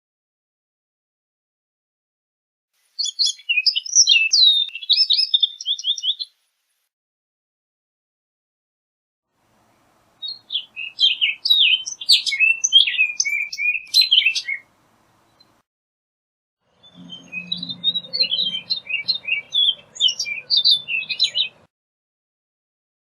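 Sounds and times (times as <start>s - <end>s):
bird singing whistled notes: 2.9s - 6.3s, 10.2s - 14.7s, 16.8s - 21.7s.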